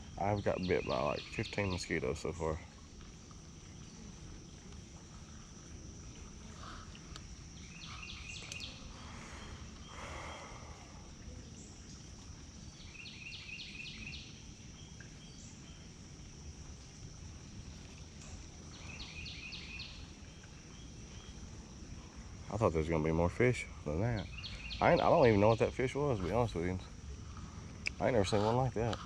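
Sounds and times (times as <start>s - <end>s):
high insect drone: 0.0s - 29.0s
low hiss: 0.0s - 29.0s
rustle: 0.0s - 29.0s
songbird singing: 0.0s - 29.0s.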